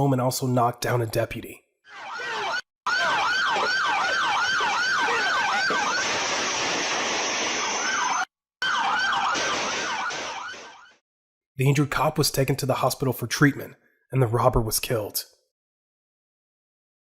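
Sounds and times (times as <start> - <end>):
police siren yelping: 1.9 - 11.0
rushing noise: 5.0 - 8.2.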